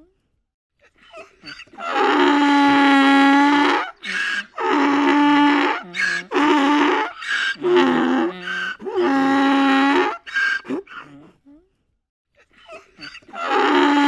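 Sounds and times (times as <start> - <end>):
donkey braying: 1.2 - 11.2, 13.0 - 14.0.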